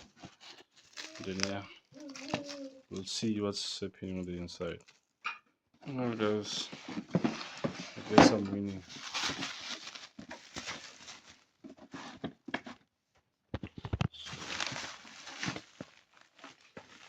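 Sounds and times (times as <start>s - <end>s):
cardboard packaging rustling: 0.0s - 3.1s, 6.3s - 12.8s, 13.6s - 17.0s.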